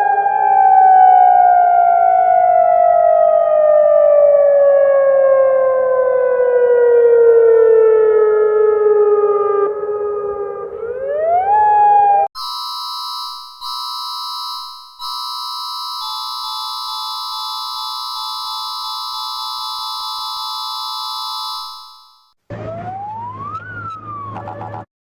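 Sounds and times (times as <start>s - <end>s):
shrill alert attention tone: 12.4s - 22.3s
siren-like alert sound: 12.4s - 24.9s.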